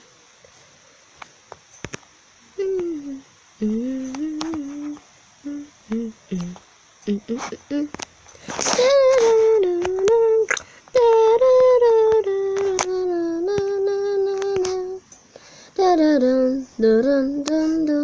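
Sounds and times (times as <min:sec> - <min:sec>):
child humming: 0:02.6 - 0:08.0, 0:08.6 - 0:15.0, 0:15.8 - 0:18.0
sharp little clicks: 0:02.6 - 0:15.3.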